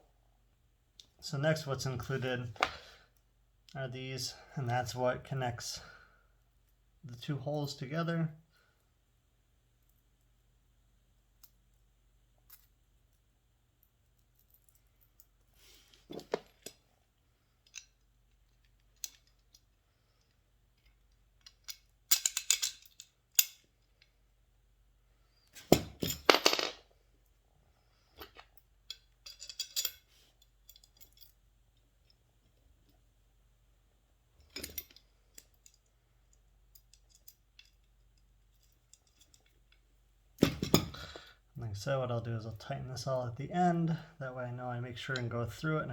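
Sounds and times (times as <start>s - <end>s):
metal parts clicking and clinking: 17.6s - 24.1s, 28.2s - 31.4s, 34.4s - 39.8s, 40.4s - 41.2s.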